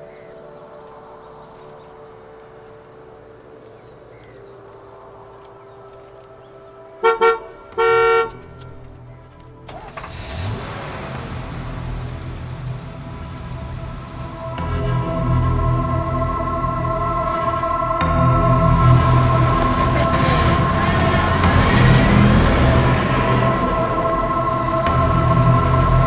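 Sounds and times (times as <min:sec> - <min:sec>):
vehicle horn honking: 0:07.0 - 0:08.4, 0:14.6 - 0:26.0
steady rushing noise: 0:11.1 - 0:26.0.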